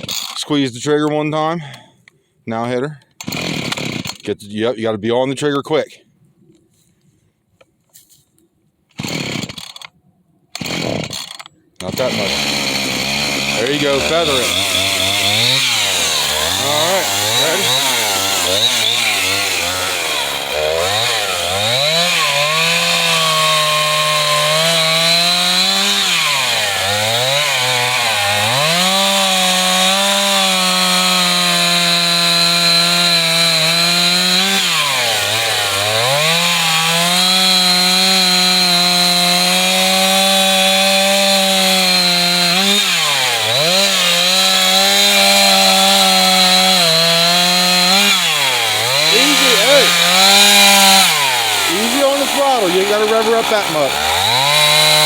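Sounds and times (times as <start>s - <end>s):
two-stroke chainsaw revving: 3.2s - 4.3s, 9.0s - 9.9s, 10.6s - 55.0s.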